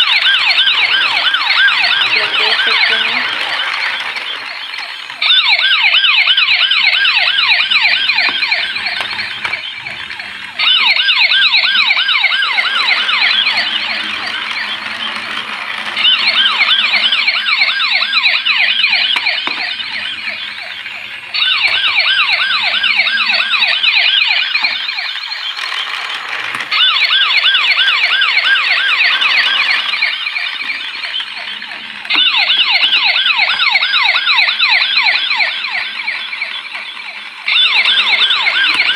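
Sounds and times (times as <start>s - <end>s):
toy siren warbling: 0.0s - 38.9s.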